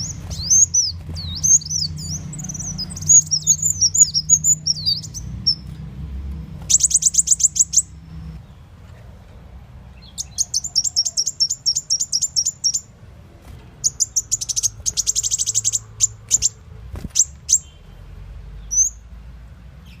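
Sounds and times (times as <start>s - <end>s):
bird rapid high chirps: 0.0s - 5.8s, 6.5s - 8.7s, 9.9s - 12.9s, 13.8s - 18.0s, 18.6s - 19.1s.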